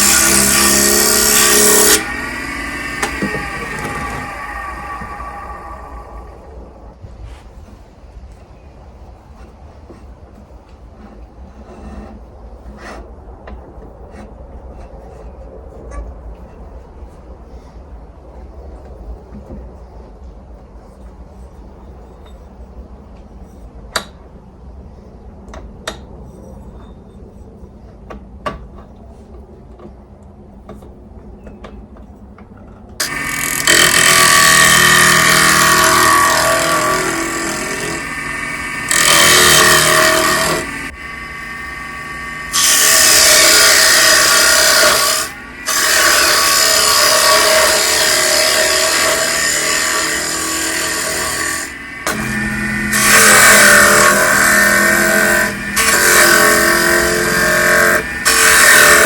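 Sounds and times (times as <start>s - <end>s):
wood lathe cutting noise: 0.0s - 7.0s, 33.0s - 59.0s.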